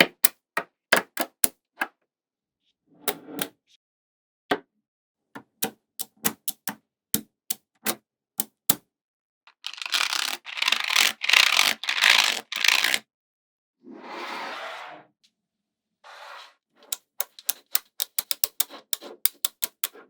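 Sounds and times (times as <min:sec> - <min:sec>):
magnetic balls snapping together: 0:05.6 - 0:06.8, 0:16.9 - 0:20.0.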